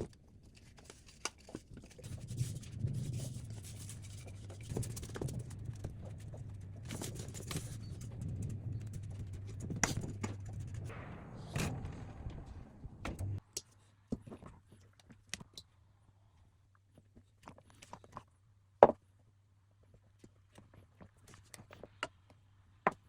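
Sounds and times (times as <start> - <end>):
rustling: 0.0 - 13.4
low hum: 2.0 - 13.4.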